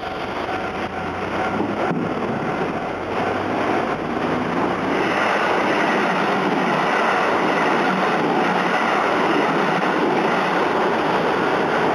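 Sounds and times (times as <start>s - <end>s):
train wheels on rails: 0.0s - 11.9s.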